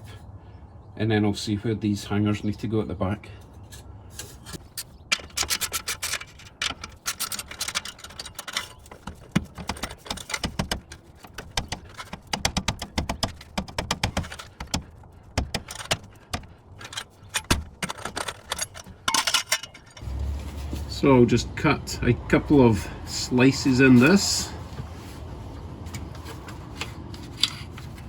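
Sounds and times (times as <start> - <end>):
metal tools clinking and rattling: 3.4 - 20.1.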